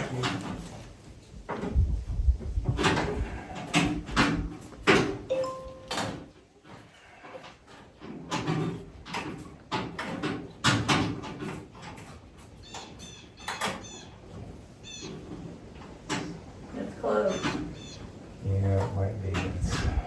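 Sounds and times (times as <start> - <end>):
short high chirps: 5.3 - 6.0.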